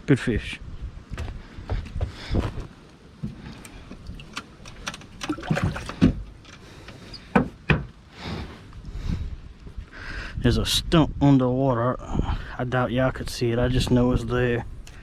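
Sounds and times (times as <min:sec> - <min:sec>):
knocks and clunks of fishing gear: 0:03.2 - 0:08.0
faint water sounds: 0:03.4 - 0:06.4.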